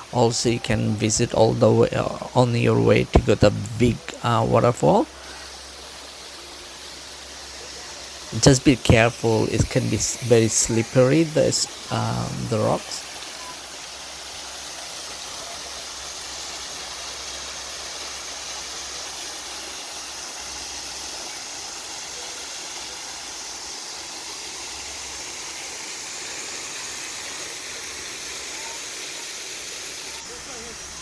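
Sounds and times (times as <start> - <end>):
waterfall rushing: 0.0 - 15.5.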